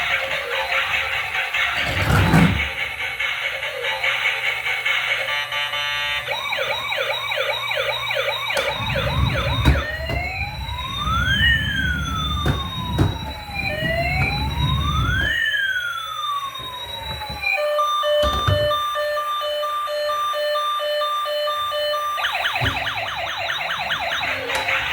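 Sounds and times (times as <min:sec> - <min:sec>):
emergency vehicle siren: 0:00.0 - 0:24.9
low rumble with knocks: 0:08.6 - 0:15.3.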